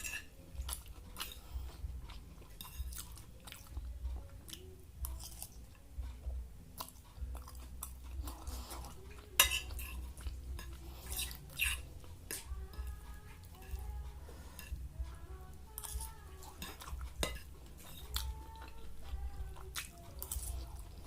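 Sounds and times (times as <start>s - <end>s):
cutlery clinking on a plate: 0.0s - 0.3s, 9.4s - 12.5s
person chewing and crunching food: 0.0s - 21.0s.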